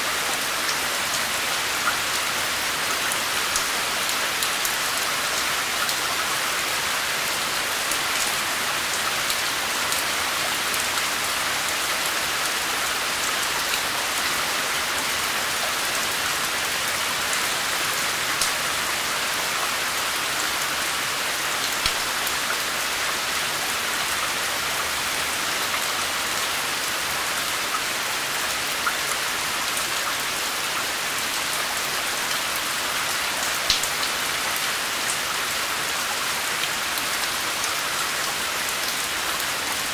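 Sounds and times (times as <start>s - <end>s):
rain falling on a surface: 0.0s - 39.9s
single raindrop tick: 33.7s - 33.9s.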